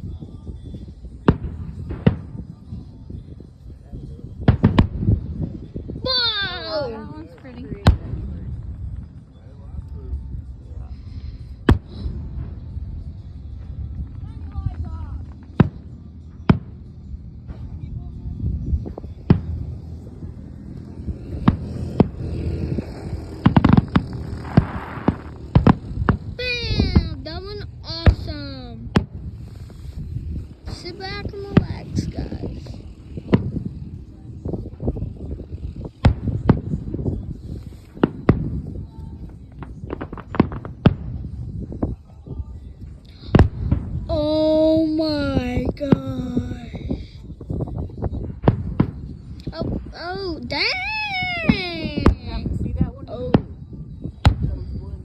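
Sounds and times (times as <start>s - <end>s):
fireworks bursting: 0.0s - 55.0s
steady low rumble: 0.0s - 55.0s.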